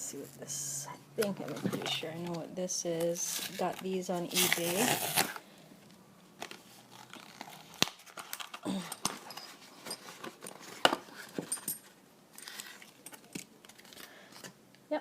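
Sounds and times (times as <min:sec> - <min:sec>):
packaging crinkling: 0:03.2 - 0:05.4, 0:06.4 - 0:11.5.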